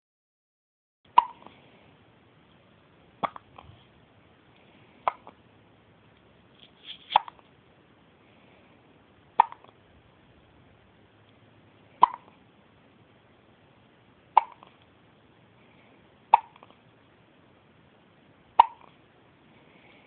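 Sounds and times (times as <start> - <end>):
baby hiccuping: 1.1 - 1.5, 3.2 - 3.6, 7.1 - 7.4, 9.4 - 9.7, 12.0 - 12.3, 14.3 - 14.8, 16.3 - 16.7, 18.6 - 19.0.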